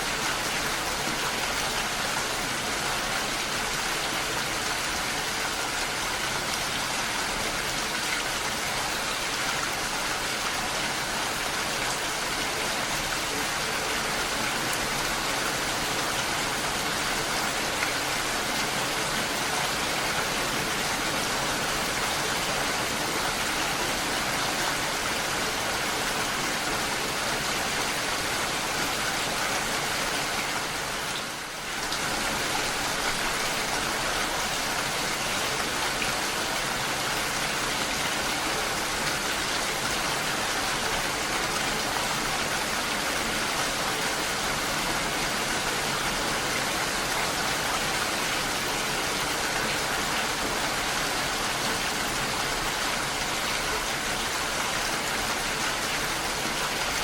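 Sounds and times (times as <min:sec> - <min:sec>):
steady rain: 0:00.0 - 0:57.0.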